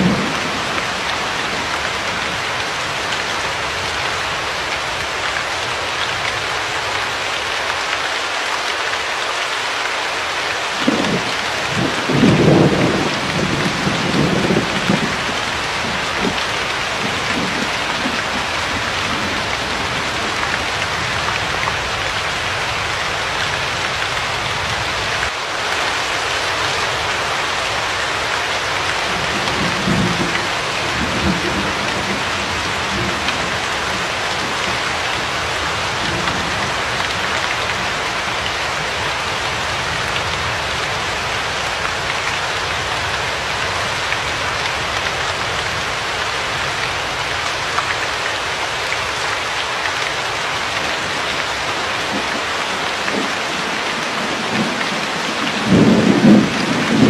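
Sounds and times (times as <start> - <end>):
thunder rumbling: 0.0 - 3.0, 10.8 - 22.9, 28.9 - 41.3, 50.8 - 57.0
steady rain falling: 0.0 - 57.0.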